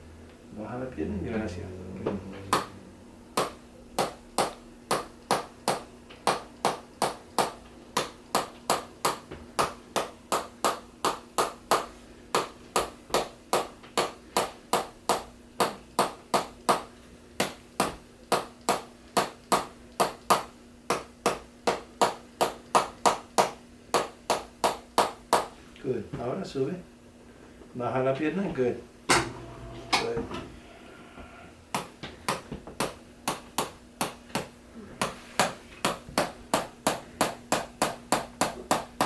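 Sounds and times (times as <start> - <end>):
faint steady hum: 0.0 - 39.0
rhythmic tapping on the body: 2.4 - 25.6, 31.7 - 39.0.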